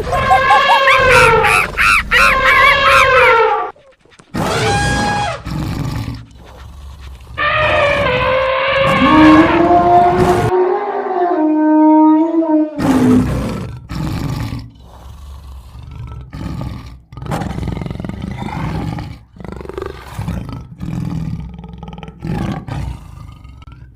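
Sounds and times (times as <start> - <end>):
long pitched animal call: 0.0 - 3.8, 7.4 - 12.8
wild animal roaring: 0.0 - 23.9.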